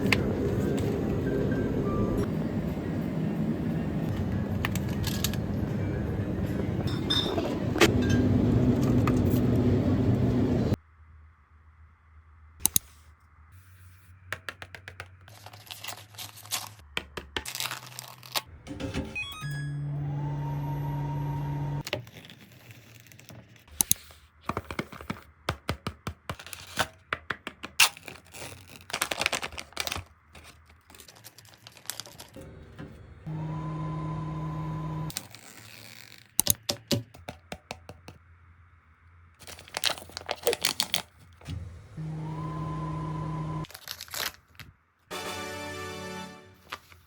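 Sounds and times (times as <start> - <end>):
microwave oven humming: 0.0 - 10.8, 18.6 - 21.8, 32.4 - 35.1, 41.5 - 43.7
plastic packaging tearing and crinkling: 15.3 - 18.5, 21.8 - 23.8, 26.3 - 27.0, 27.7 - 32.4, 35.1 - 36.7, 39.4 - 41.4, 43.6 - 44.8.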